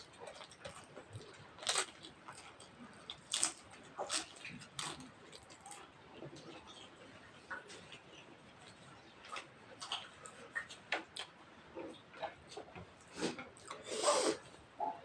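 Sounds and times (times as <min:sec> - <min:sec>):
chewing and mouth smacks: 0:07.5 - 0:13.8.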